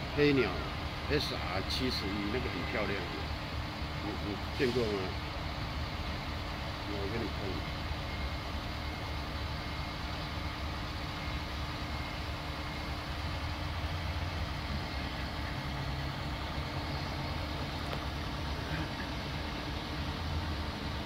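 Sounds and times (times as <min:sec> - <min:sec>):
heavy vehicle engine idling: 0:00.0 - 0:21.0.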